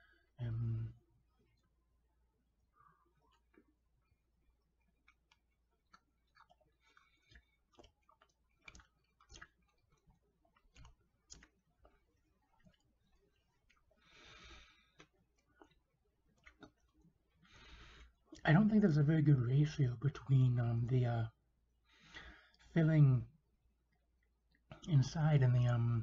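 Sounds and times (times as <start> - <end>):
mouth clicks and chewing smacks: 1.0 - 2.2, 2.9 - 18.5, 23.8 - 25.0.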